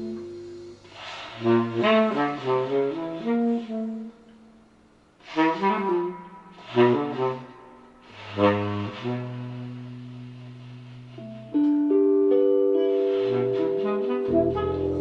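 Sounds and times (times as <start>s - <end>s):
breathy puff of air: 0.0s - 2.5s, 6.6s - 8.9s
saxophone over loudspeakers: 13.3s - 15.0s.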